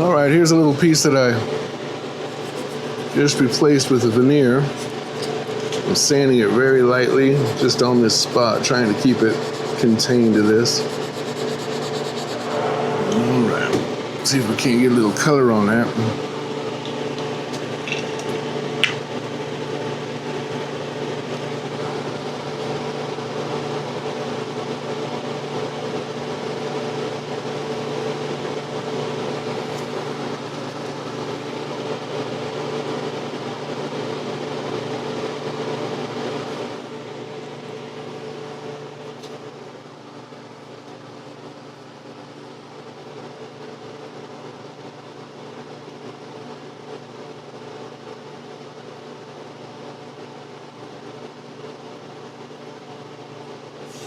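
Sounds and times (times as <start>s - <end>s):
electric fan motor hum: 0.0s - 41.6s.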